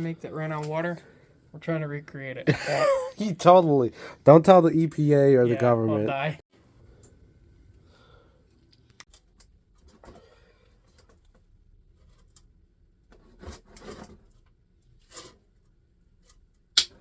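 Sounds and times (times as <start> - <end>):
sharp crack: 16.8 - 17.0.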